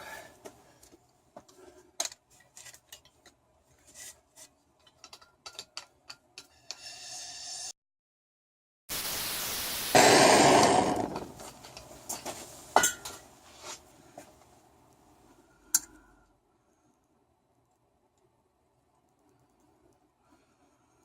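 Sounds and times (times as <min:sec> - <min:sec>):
gas torch hissing: 0:08.9 - 0:11.3.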